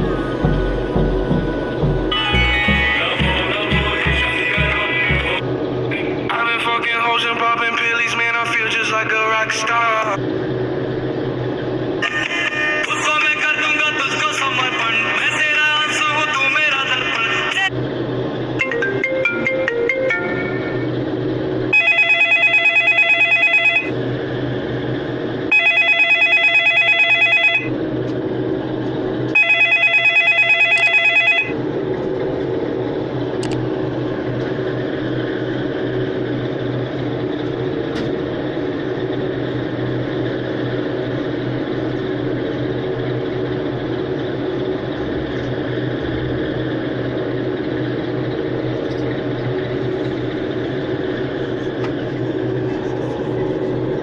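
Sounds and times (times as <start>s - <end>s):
low background hum: 0.0s - 54.0s
trilling telephone ringtone: 21.7s - 23.9s, 25.5s - 27.7s, 29.4s - 31.6s.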